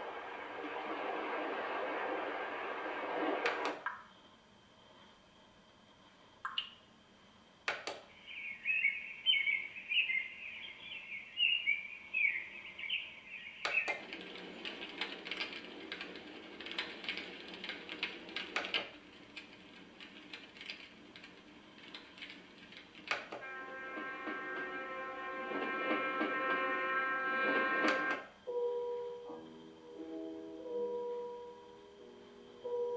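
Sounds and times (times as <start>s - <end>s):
crackling noise track: 0.0s - 28.5s
birdsong track chirping: 8.0s - 14.0s.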